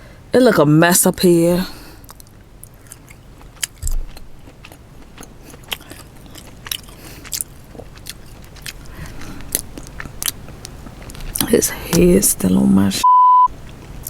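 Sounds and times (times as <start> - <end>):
crawfish shells cracking: 2.0 - 12.0.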